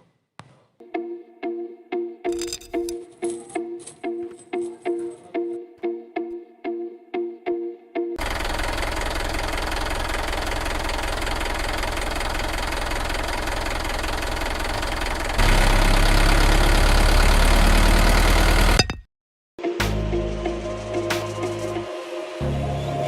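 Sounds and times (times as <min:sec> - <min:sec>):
engine running with knocking: 0:08.2 - 0:18.8.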